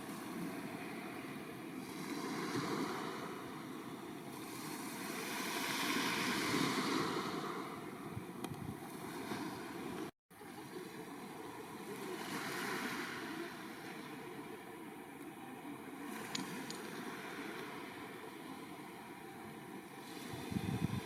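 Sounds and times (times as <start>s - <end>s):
surf washing on shore: 0.0s - 21.0s
wind on microphone: 4.4s - 10.1s, 20.0s - 21.0s.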